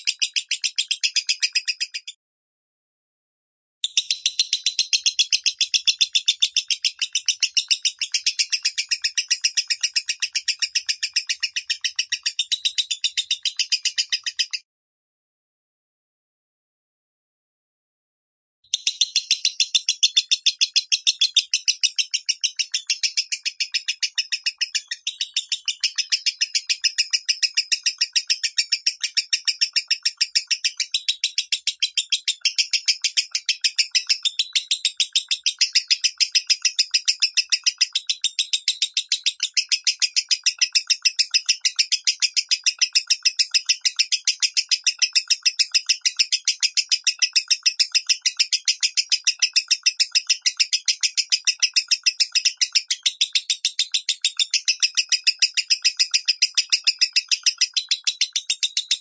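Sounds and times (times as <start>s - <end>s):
bird chirping rapidly: 0.0s - 2.2s, 3.8s - 14.6s, 18.7s - 59.0s.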